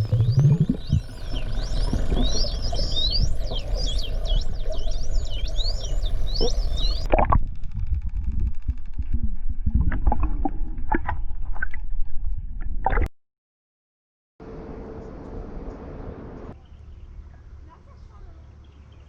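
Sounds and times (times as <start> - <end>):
clicks and pops: 0.0 - 1.1
dolphins whistling underwater: 0.0 - 7.1
underwater bubbling and gurgling: 0.0 - 13.1.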